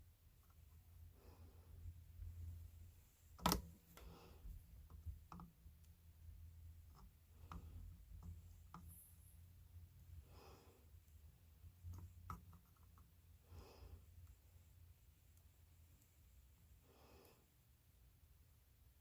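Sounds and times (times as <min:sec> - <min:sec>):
faint low hum: 0:00.0 - 0:19.0
soft breath out: 0:10.1 - 0:11.1, 0:13.4 - 0:14.4, 0:16.7 - 0:17.6.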